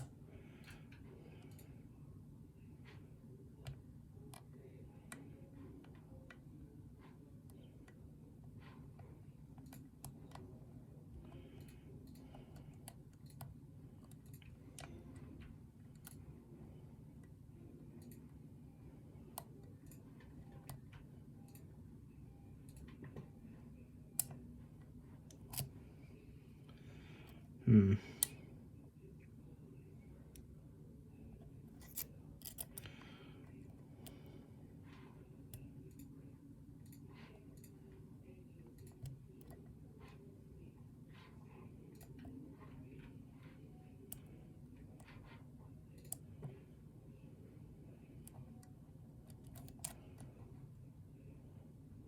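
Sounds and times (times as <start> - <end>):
low steady hum: 0.0 - 52.0
lock pick clicking: 31.8 - 32.9, 49.3 - 50.0.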